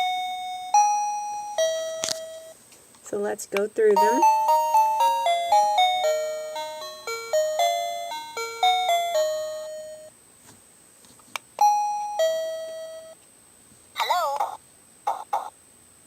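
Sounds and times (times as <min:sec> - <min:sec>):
electronic doorbell chime melody: 0:00.0 - 0:02.6, 0:04.0 - 0:10.1, 0:11.6 - 0:13.2
two-note ding-dong chime: 0:00.0 - 0:02.6, 0:03.9 - 0:10.1, 0:11.6 - 0:13.2.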